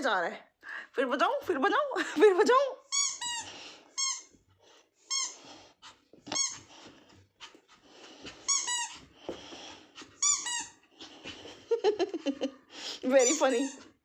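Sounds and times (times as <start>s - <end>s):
squeaky dog toy squeaks: 2.8s - 4.4s, 5.0s - 5.4s, 6.3s - 6.7s, 8.4s - 9.0s, 10.1s - 10.8s, 13.1s - 13.9s.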